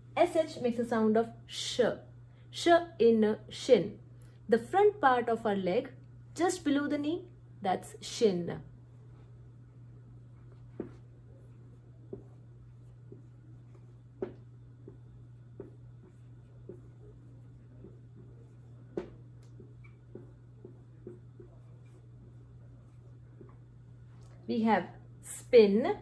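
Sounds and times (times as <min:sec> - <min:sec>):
pen scratching on paper: 0:10.6 - 0:23.6.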